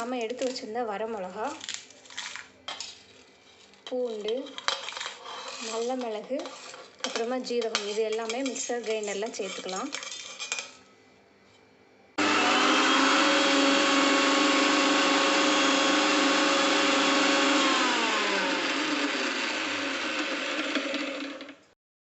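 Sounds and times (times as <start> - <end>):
mixer grinder motor whining: 12.2 - 21.7.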